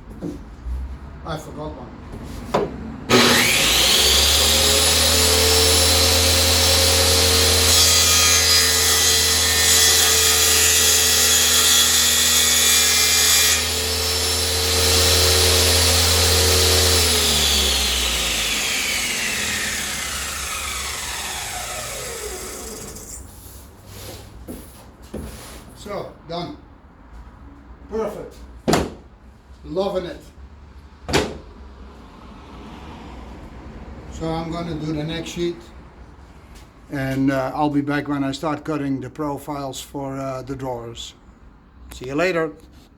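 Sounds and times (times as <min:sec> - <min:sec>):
power saw cutting wood: 0:03.1 - 0:23.4.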